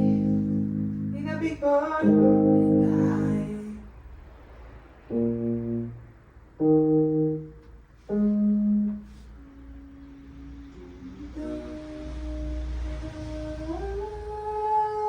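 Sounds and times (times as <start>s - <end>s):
horn-like instrument notes: 8.1s - 15.0s.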